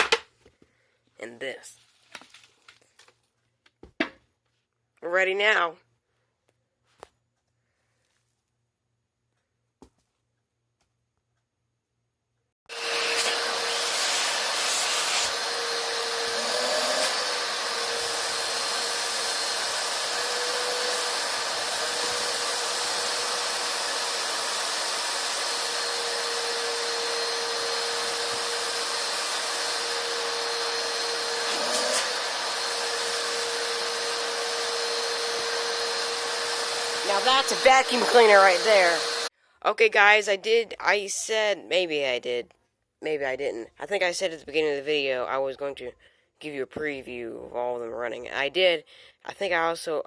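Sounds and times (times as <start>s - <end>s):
vacuum cleaner whining: 12.7s - 39.3s.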